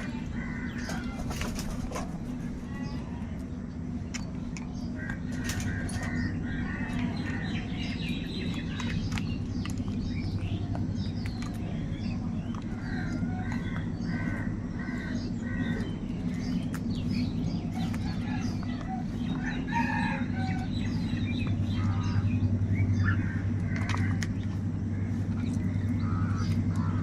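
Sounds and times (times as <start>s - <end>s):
crows cawing: 0.0s - 2.1s, 4.9s - 8.4s, 12.6s - 16.6s, 17.2s - 27.0s
low hum: 0.0s - 27.0s
small birds chirping: 0.0s - 27.0s.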